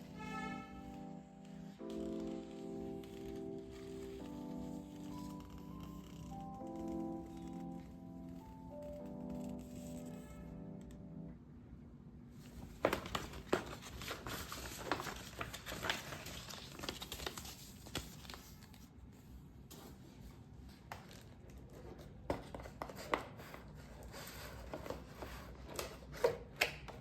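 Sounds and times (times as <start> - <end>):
cardboard and plastic rustling: 12.4 - 19.0, 19.7 - 27.0.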